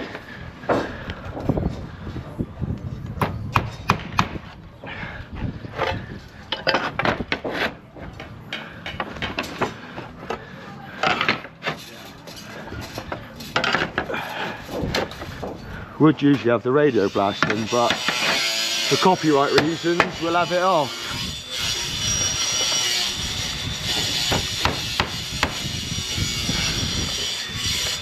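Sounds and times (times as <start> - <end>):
slates clattering: 11.0 - 15.7.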